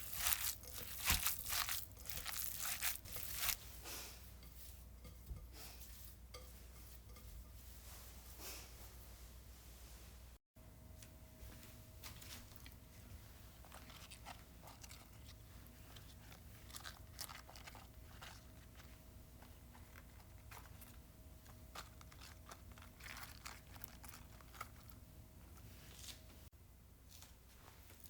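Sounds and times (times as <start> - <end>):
crisp crunches and crackles: 0.0 - 3.6, 13.6 - 18.9, 21.7 - 25.0.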